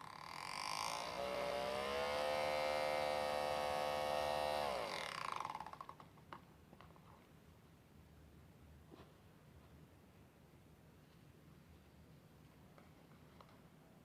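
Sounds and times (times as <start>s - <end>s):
washing machine motor whine: 0.3s - 5.3s.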